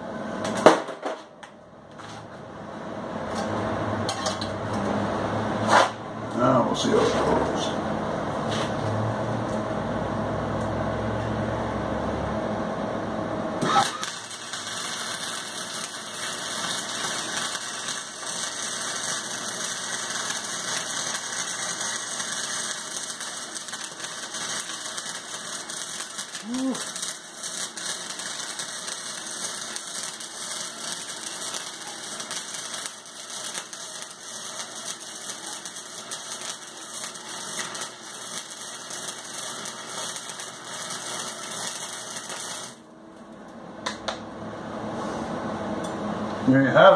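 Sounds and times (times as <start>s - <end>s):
welding arc crackling and sizzling: 13.6s - 42.9s.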